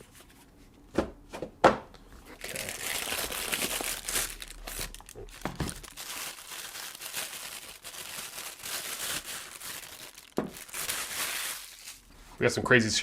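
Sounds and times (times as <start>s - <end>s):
packaging crinkling and tearing: 2.3s - 12.1s.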